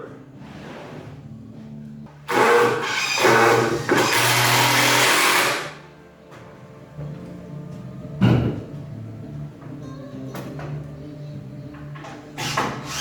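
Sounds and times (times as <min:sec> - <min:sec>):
power tool running: 0:02.3 - 0:05.8, 0:12.4 - 0:13.0.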